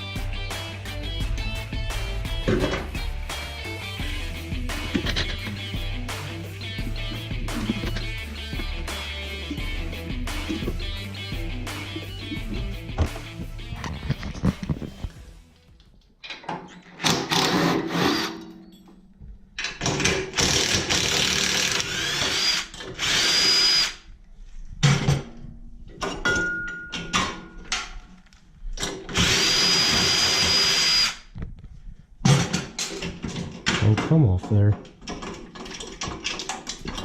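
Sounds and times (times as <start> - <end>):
metal parts knocking: 4.9 - 5.7, 32.2 - 37.0
power drill whining: 20.4 - 24.1, 29.1 - 31.3.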